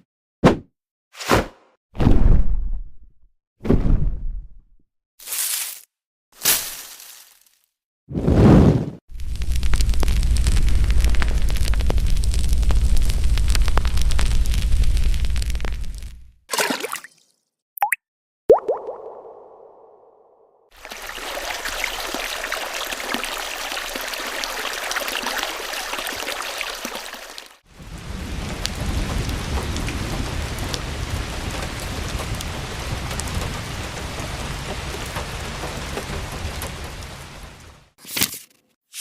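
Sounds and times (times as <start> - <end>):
heavy rain with deep rumble: 9.1 - 16.1, 20.8 - 38.0
hissing fine rain: 9.1 - 16.2, 20.8 - 38.0.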